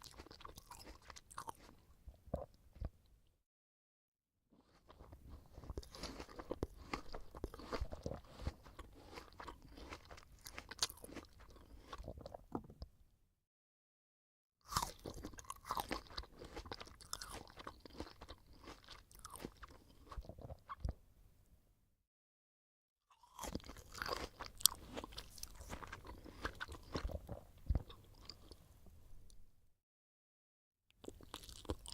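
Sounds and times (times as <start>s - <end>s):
apple being chewed crunchily: 0.0s - 3.0s, 4.6s - 12.7s, 14.7s - 21.0s, 23.1s - 28.6s, 30.9s - 31.9s.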